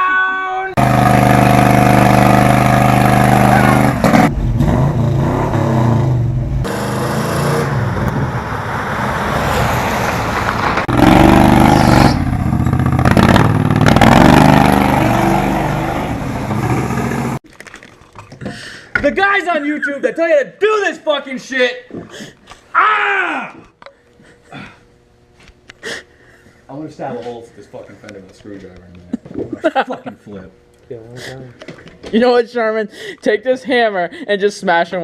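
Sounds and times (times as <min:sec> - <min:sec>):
car engine revving: 0:00.8 - 0:17.4.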